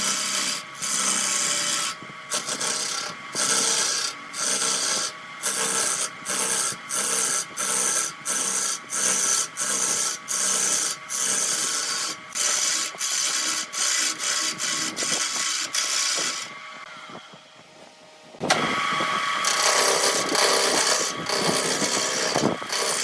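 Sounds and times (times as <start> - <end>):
hand tool rubbing wood: 0.0 - 18.8, 19.4 - 23.0.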